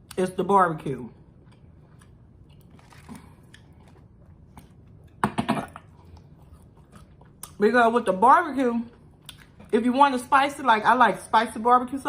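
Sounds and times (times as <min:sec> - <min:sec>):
person chewing: 0:01.2 - 0:07.6, 0:08.9 - 0:09.7.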